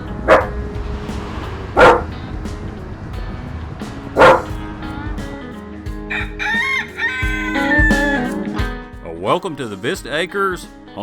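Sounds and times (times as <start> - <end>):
background music: 0.0 - 11.0
dog barking: 0.3 - 0.5, 1.8 - 2.1, 4.2 - 4.5.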